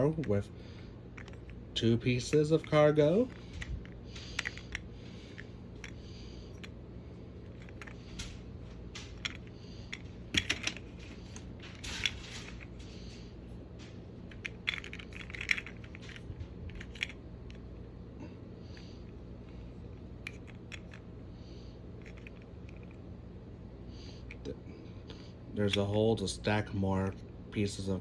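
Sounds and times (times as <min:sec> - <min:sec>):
low hum: 0:00.0 - 0:28.0
plastic toy train clicks and clatter: 0:14.3 - 0:17.2.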